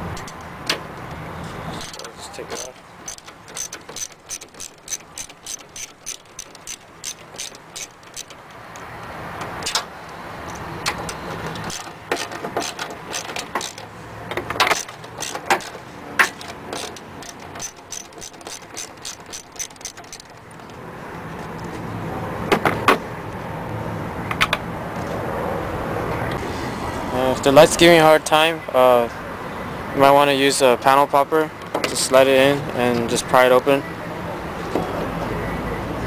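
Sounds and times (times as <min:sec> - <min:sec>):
irregular clicks and knocks: 0:00.1 - 0:01.2, 0:01.8 - 0:20.8
ratchet clicking: 0:00.1 - 0:01.2, 0:01.8 - 0:08.9, 0:09.6 - 0:13.9, 0:14.5 - 0:20.8.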